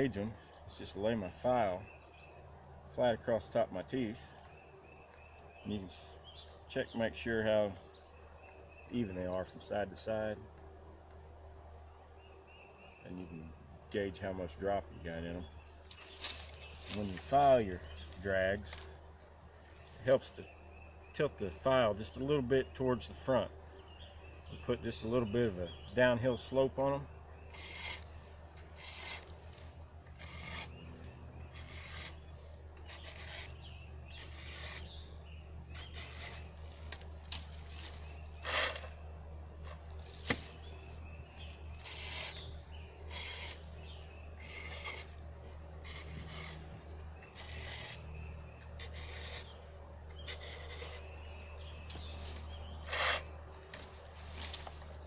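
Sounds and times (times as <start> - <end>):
file scraping steel: 27.5 - 28.1, 28.8 - 29.6, 30.2 - 35.0, 35.7 - 36.6, 41.4 - 43.7, 44.4 - 45.2, 45.8 - 49.6, 50.2 - 51.2, 52.8 - 53.3.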